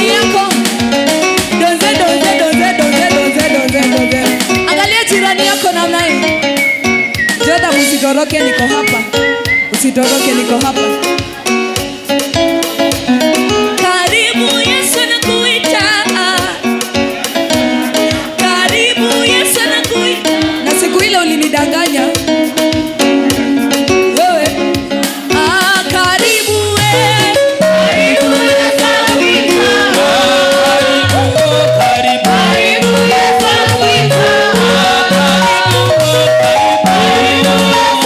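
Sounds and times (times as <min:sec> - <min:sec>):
people singing: 0:00.0 - 0:04.5, 0:18.2 - 0:20.9, 0:25.6 - 0:38.0
melodic lines: 0:00.0 - 0:19.5, 0:26.1 - 0:38.0
guitar: 0:00.0 - 0:38.0
percussion: 0:00.0 - 0:38.0.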